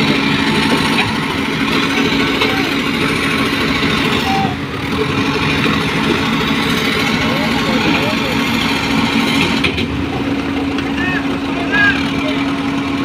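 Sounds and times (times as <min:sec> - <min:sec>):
heavy diesel engine running: 0:00.0 - 0:13.0.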